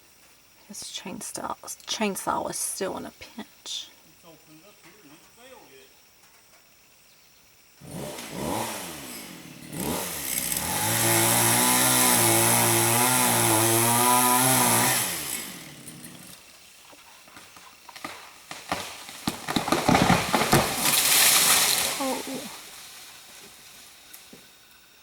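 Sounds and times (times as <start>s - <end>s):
chainsaw cutting: 7.8s - 24.6s
tree cracking and crashing down: 9.7s - 24.5s.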